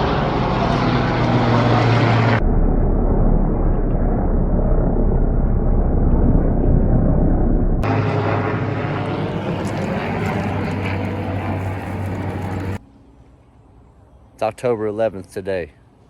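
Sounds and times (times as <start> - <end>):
engine running: 0.0 - 12.8
low hum: 0.0 - 14.4.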